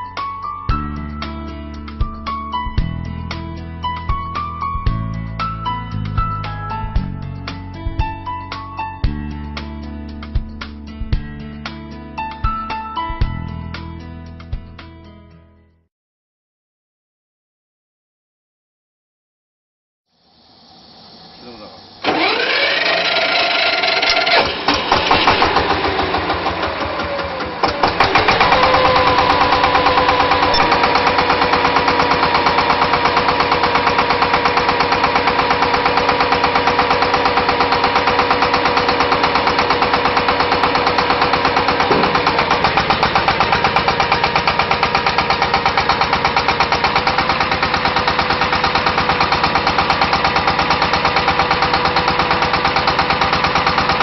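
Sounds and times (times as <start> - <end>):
drilling rig engine revving: 20.9 - 54.0.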